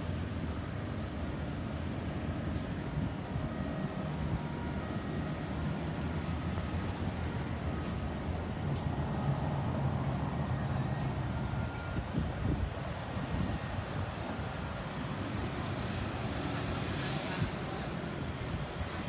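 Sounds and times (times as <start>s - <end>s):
road traffic noise: 0.0s - 19.0s.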